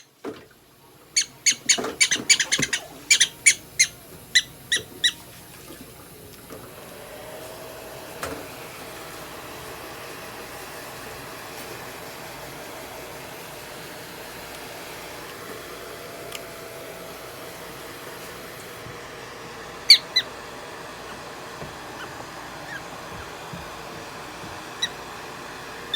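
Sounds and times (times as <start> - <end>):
prairie dog chirping calls: 1.2 - 5.2, 19.9 - 20.3, 22.0 - 22.8.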